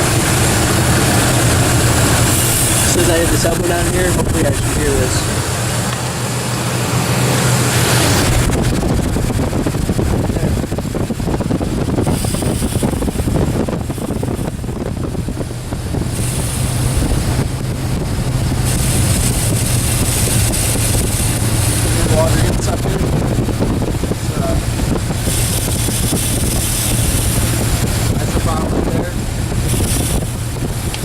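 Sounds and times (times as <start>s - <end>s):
truck engine idling: 0.0s - 31.0s.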